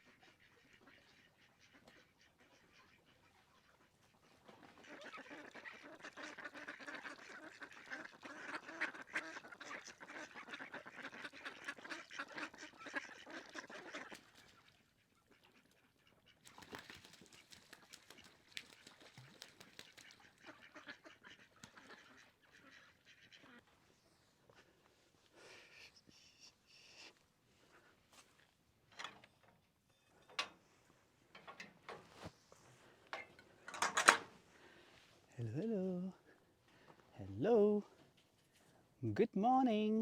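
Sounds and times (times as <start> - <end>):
ducks quacking: 0.0 - 27.9.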